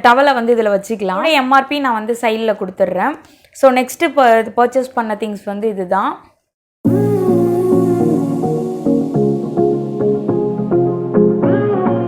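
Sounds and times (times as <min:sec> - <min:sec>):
upbeat electronic music: 0:06.9 - 0:12.0.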